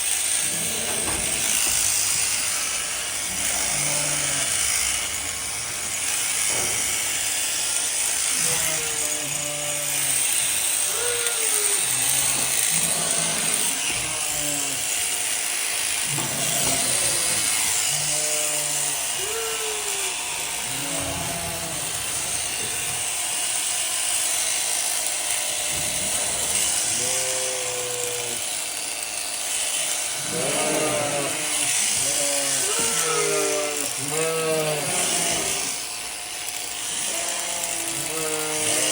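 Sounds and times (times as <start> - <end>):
electric shearing handpiece running: 0.0 - 38.9
sheep bleating: 0.4 - 2.3, 3.2 - 5.1, 8.3 - 15.0, 16.0 - 23.1, 25.8 - 28.5, 30.2 - 35.8, 36.9 - 38.9.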